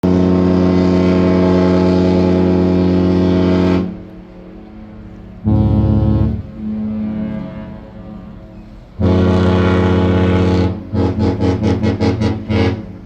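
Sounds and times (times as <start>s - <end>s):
ship horn blasts: 0.0s - 13.0s.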